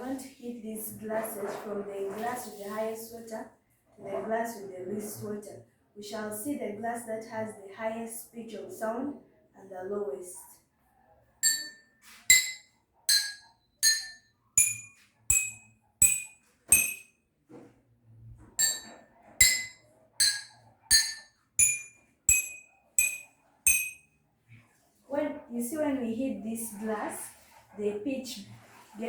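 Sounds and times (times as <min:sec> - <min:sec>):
water glasses struck ringing: 0:11.4 - 0:17.0, 0:18.6 - 0:24.0.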